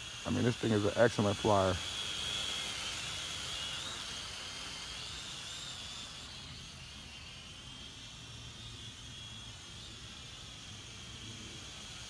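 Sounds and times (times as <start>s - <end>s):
quadcopter propellers whining: 0.0s - 6.6s.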